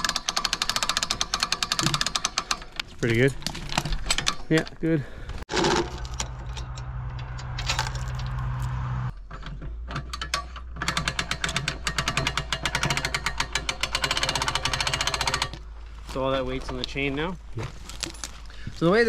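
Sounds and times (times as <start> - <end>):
hand winch ratchet clicking: 0.0 - 2.8, 10.2 - 15.6
low mechanical hum: 5.5 - 9.1.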